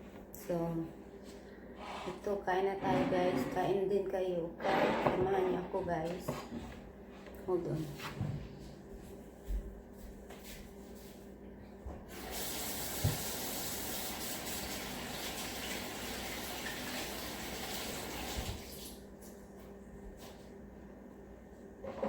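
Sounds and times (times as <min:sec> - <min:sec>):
water running from a tap: 0:12.1 - 0:19.0.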